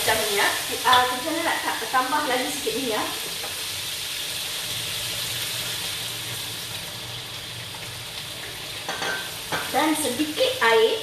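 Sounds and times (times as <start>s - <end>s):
chili paste sizzling in oil: 0.0s - 11.0s.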